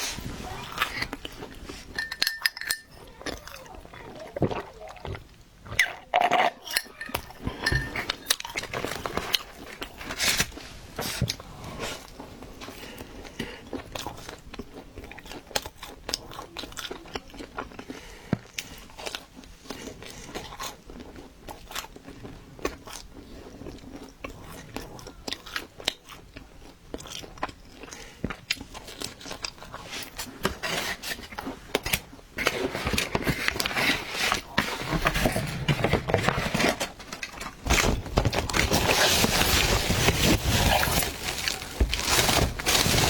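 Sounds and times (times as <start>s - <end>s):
crunchy pizza chewing: 0.0s - 2.0s, 3.1s - 35.5s.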